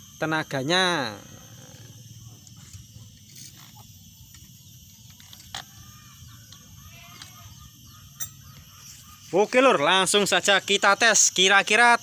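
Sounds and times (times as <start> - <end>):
faint bird calls: 5.2 - 9.8.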